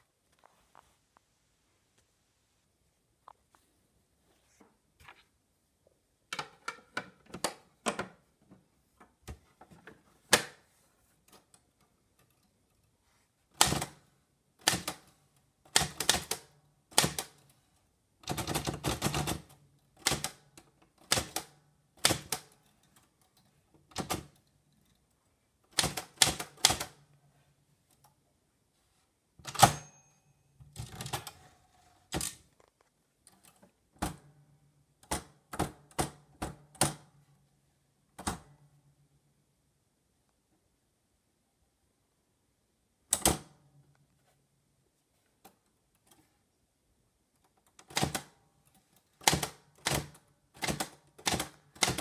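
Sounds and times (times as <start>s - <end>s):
typewriter keys clacking: 49.2s - 52.0s.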